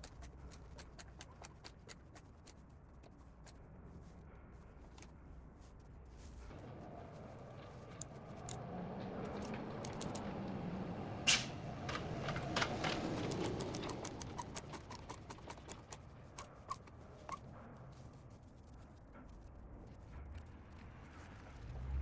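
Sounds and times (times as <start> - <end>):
light clicks and taps: 6.5 - 10.6, 11.3 - 21.1.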